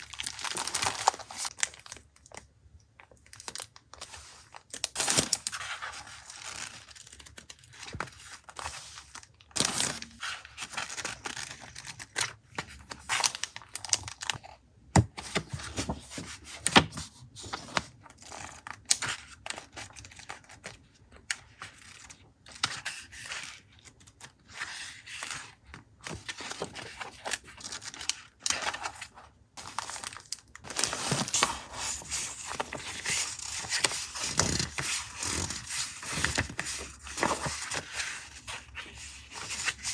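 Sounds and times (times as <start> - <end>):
paper packaging crinkling and tearing: 0.0 - 2.4, 3.3 - 14.5, 21.9 - 39.9.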